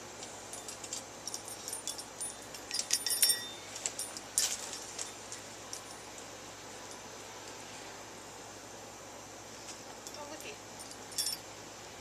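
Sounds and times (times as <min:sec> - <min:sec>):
light metallic clinking: 0:00.2 - 0:07.6, 0:09.9 - 0:11.5.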